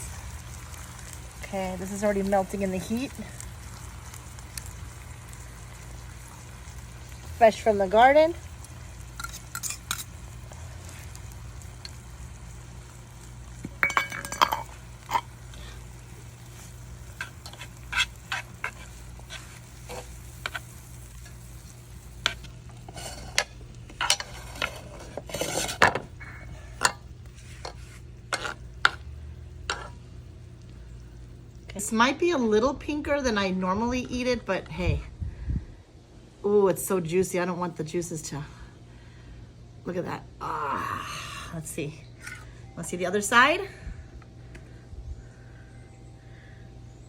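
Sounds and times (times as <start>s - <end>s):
metal utensils scraping a pan: 9.2s - 10.1s, 17.1s - 20.7s, 22.2s - 26.1s, 26.8s - 29.0s, 29.7s - 30.0s.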